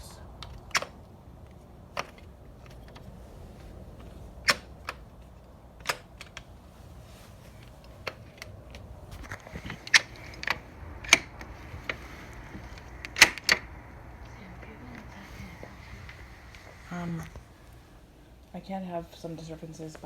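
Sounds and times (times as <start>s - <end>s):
door handle and lock clicking: 0.4s - 1.0s, 4.4s - 6.5s, 7.7s - 14.3s.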